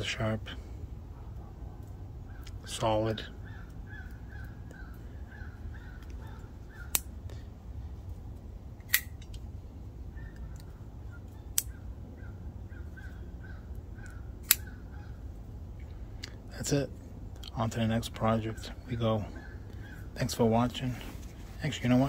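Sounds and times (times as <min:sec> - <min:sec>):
folding knife blade clicks: 0:08.8 - 0:09.4, 0:14.4 - 0:14.7.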